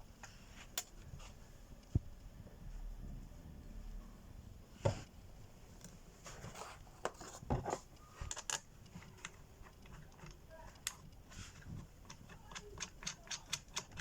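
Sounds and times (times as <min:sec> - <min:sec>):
light clicks and knocks of hand work: 0:05.8 - 0:14.0.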